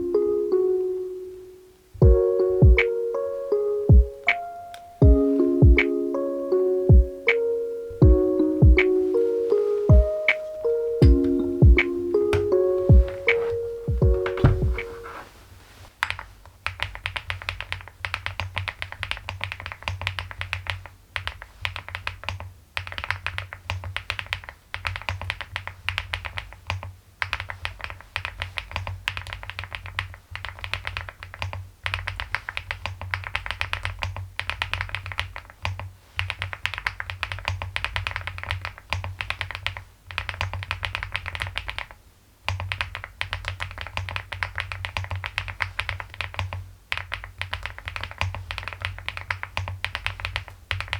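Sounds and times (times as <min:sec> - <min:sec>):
fast mechanical keyboard typing: 0:16.6 - 0:41.9, 0:42.5 - 0:50.9.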